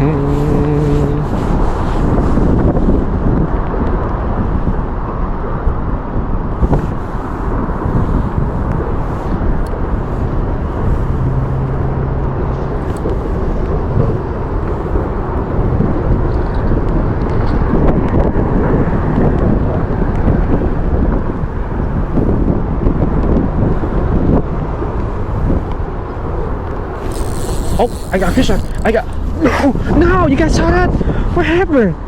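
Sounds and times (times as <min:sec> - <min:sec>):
short low hum: 0:00.0 - 0:01.7
wind buffeting microphone: 0:00.0 - 0:32.0.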